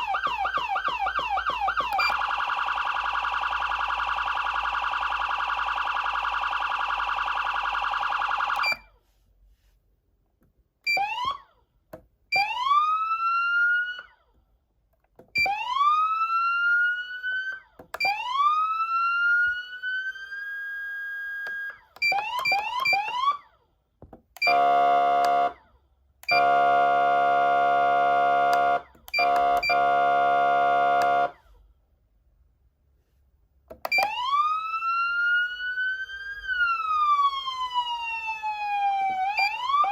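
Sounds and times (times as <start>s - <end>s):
electronic siren tones: 0.0s - 8.9s, 33.9s - 39.9s.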